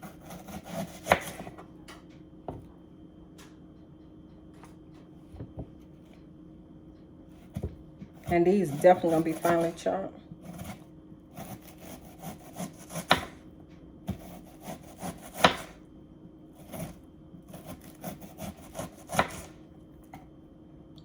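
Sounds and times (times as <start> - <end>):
knife chopping on cutting board: 0.0 - 1.6, 7.4 - 9.8, 10.5 - 13.4, 14.1 - 15.8, 16.6 - 19.6.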